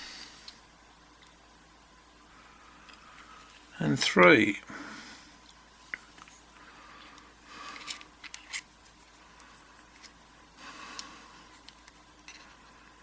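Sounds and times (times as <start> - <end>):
small metal parts clicking: 7.8 - 8.7, 11.6 - 12.6.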